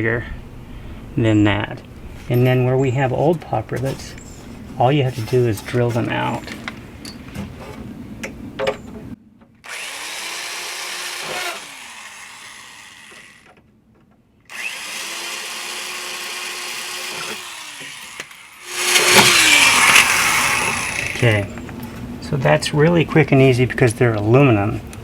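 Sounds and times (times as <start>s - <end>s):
power drill drilling rivets: 9.6s - 13.6s, 14.5s - 21.4s.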